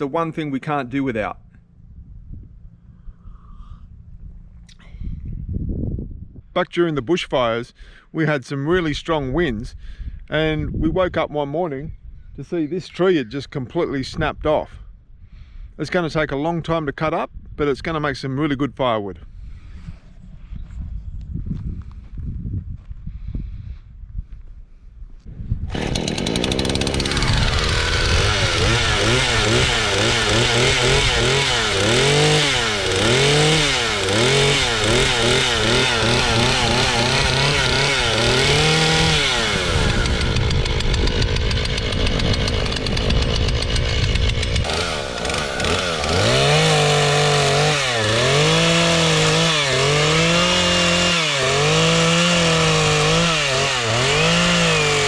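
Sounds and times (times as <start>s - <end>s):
chainsaw cutting wood: 25.7s - 55.0s.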